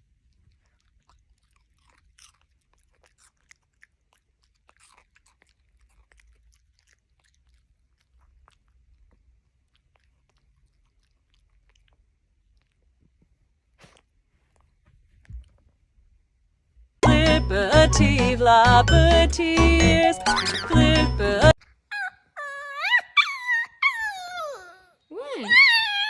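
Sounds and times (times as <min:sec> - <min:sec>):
puppy chewing: 0:00.0 - 0:16.1.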